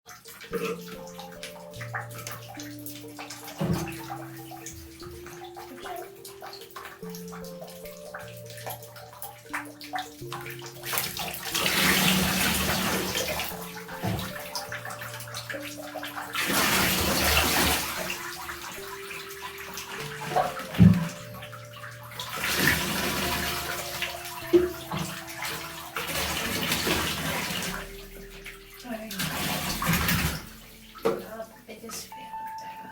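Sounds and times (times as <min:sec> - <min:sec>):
water splashing in a bathtub: 0:00.0 - 0:32.9
knocks against a tub: 0:03.5 - 0:06.0, 0:11.0 - 0:14.7, 0:20.1 - 0:21.4, 0:22.5 - 0:27.3, 0:29.2 - 0:31.3.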